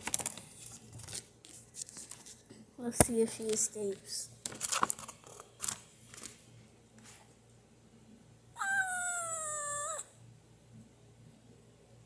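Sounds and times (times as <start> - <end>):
kitten meowing: 8.6 - 10.1.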